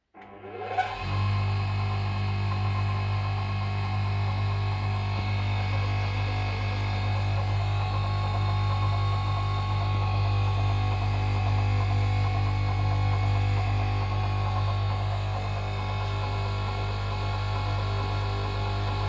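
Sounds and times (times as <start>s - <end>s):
bench grinder motor whining: 0.2s - 19.0s.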